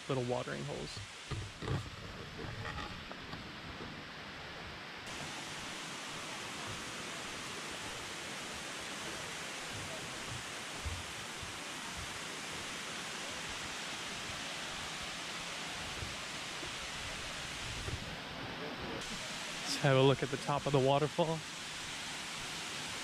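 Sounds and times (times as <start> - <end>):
soft low thump: 1.3 - 1.9
waterfall rushing: 5.1 - 23.0.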